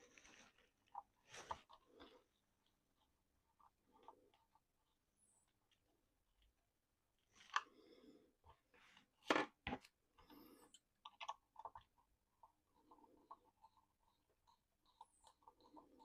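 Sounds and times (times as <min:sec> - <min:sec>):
scratchy rustles: 0:00.0 - 0:02.1
small plastic parts clicking: 0:10.7 - 0:12.0.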